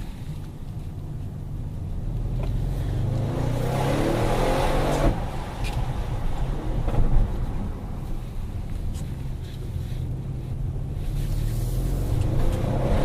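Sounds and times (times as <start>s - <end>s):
car engine accelerating hard: 2.0s - 7.8s, 10.8s - 13.0s.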